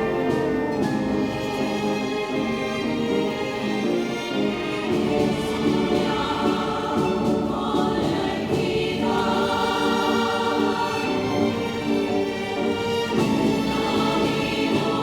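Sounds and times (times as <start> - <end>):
choir singing sustained chords: 0.0 - 15.0
orchestral accompaniment: 0.0 - 15.0.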